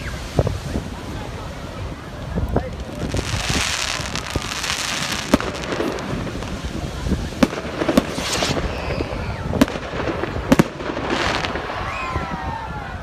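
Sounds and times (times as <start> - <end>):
fireworks bangs: 0.0 - 12.5
hissing rush: 0.0 - 12.7.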